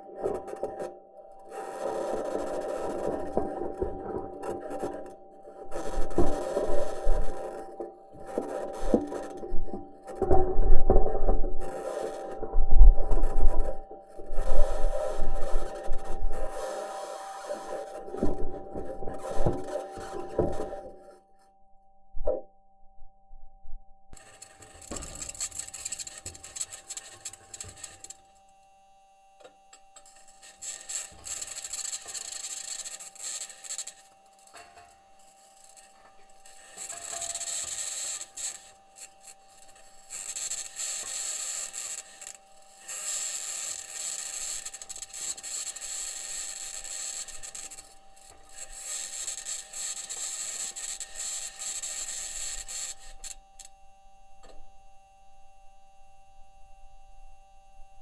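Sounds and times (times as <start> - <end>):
faint steady tone: 12.5 - 58.0.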